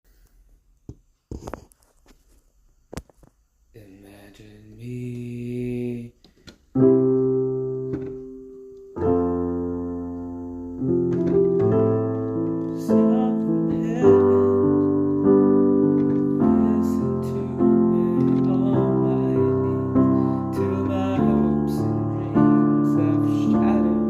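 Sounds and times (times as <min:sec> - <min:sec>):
slow piano chords: 0:06.8 - 0:24.0.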